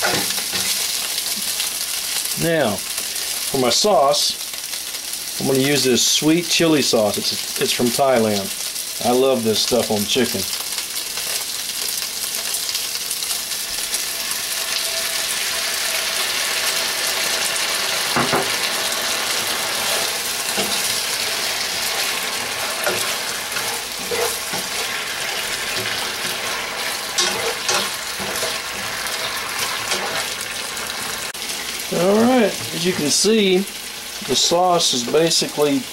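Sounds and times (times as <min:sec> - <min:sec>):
chicken wings sizzling in pan: 0:00.0 - 0:35.9
knocks of stirring food: 0:16.6 - 0:31.1.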